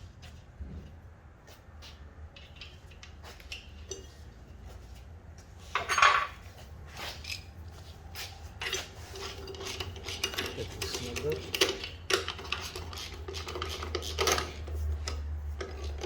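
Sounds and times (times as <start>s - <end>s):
metal clattering scrape: 5.6s - 16.0s.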